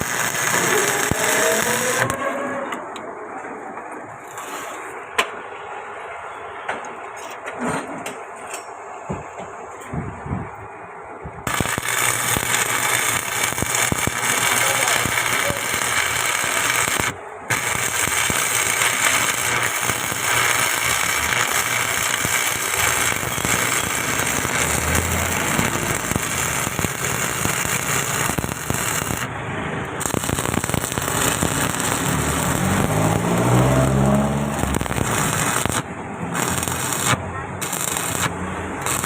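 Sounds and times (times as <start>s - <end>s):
arc welding crackle: 0.0s - 2.4s, 4.2s - 5.0s, 11.4s - 39.0s
low droning rising in pitch: 31.4s - 35.2s.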